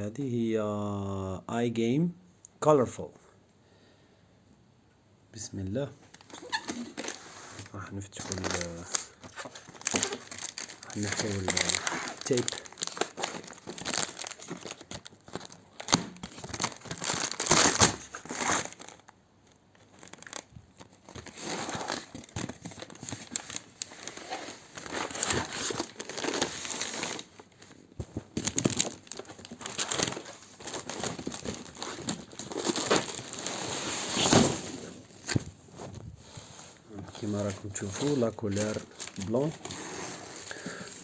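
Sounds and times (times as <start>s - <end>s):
packaging crinkling and rustling: 6.0s - 41.0s
packing tape peeling and tearing: 6.2s - 7.6s, 8.3s - 27.5s, 28.3s - 35.4s.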